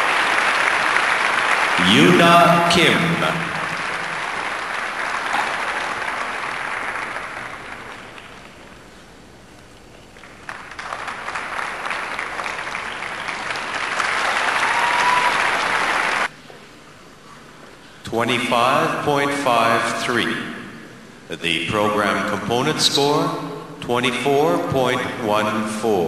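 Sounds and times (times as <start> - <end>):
arena crowd applauding: 0.0 - 8.9, 10.2 - 16.3.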